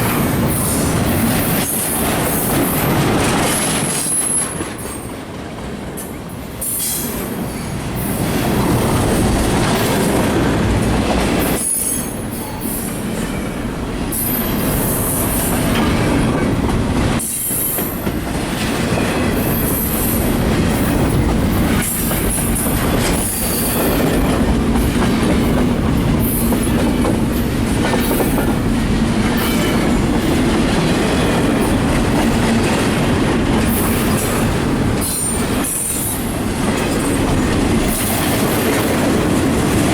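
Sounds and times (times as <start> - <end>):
freight train rumbling over rails: 0.0 - 39.9.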